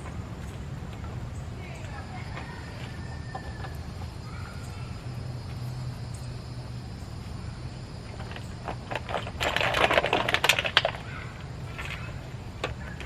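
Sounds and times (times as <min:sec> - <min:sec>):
steady low hum: 0:00.0 - 0:13.0
dog claws scrabbling on hard surface: 0:08.1 - 0:11.1.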